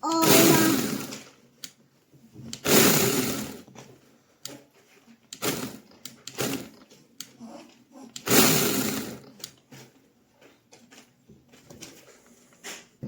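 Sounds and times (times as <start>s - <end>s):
electric chainsaw motor bursts: 0.1s - 1.2s, 2.6s - 3.6s, 5.4s - 6.7s, 8.2s - 9.2s.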